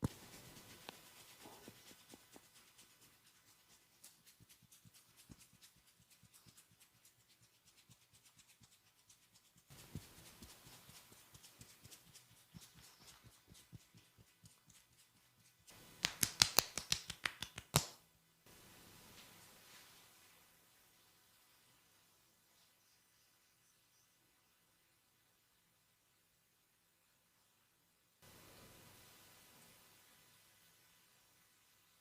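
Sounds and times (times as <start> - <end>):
clicks and crackles from head massage: 0.0 - 18.0.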